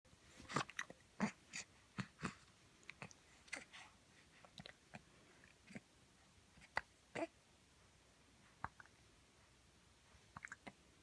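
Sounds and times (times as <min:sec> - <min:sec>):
mouth clicks and smacks: 0:08.6 - 0:09.0, 0:10.3 - 0:10.8.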